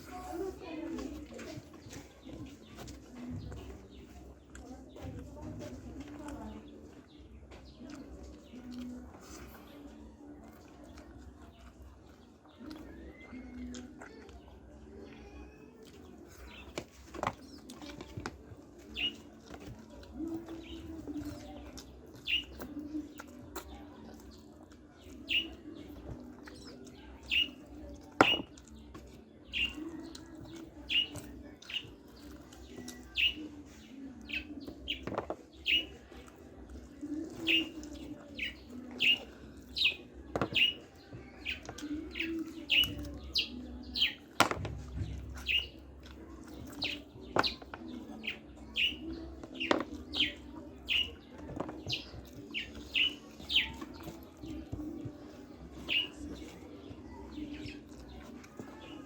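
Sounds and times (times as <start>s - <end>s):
bird chirping: 34.3s - 36.0s, 37.1s - 45.8s, 46.8s - 54.6s.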